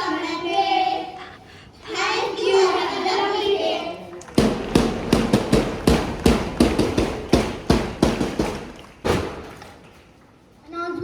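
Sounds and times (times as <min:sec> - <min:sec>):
hands clapping in applause: 0:04.1 - 0:09.9.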